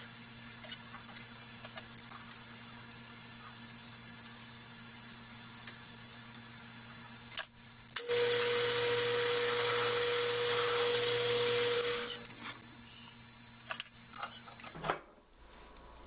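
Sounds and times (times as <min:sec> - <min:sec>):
power tool grinding metal: 0:08.0 - 0:12.3.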